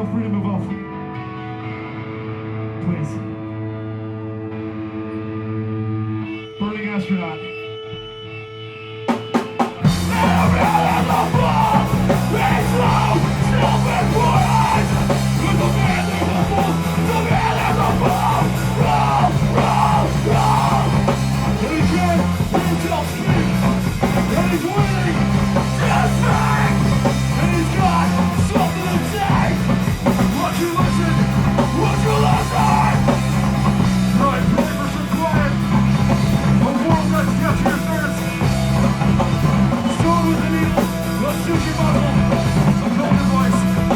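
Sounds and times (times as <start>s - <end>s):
live rock band playing: 0.7s - 43.9s
low bass line: 9.9s - 43.9s.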